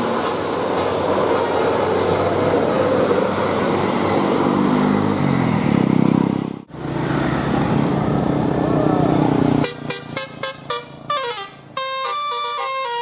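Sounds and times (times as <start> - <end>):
bus engine drone: 0.0 - 13.0.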